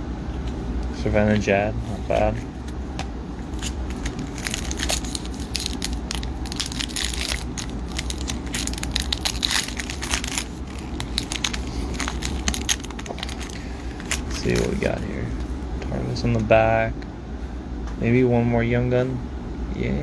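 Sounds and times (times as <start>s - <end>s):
foil wrapper crinkling: 3.4s - 15.7s.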